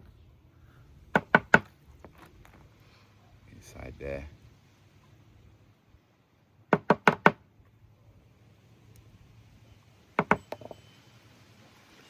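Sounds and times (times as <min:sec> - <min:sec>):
sharp knocks: 0:01.1 - 0:01.7, 0:06.7 - 0:07.4, 0:10.2 - 0:10.8.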